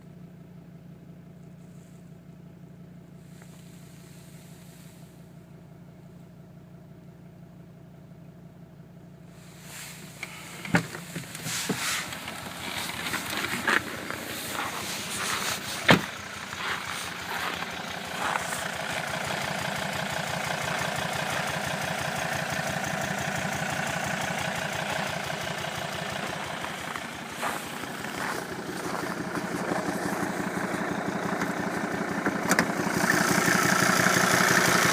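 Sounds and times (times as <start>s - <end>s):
diesel engine idling: 0.0s - 34.9s
engine knocks: 10.2s - 34.9s.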